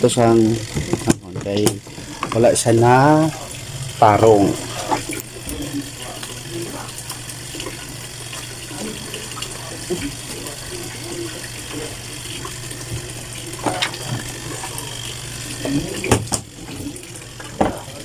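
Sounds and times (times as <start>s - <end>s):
motor hum: 0.0s - 18.0s
washing machine churning water: 0.0s - 18.0s
water sloshing: 0.0s - 18.0s
washing machine knocks: 15.7s - 16.6s, 17.6s - 18.0s.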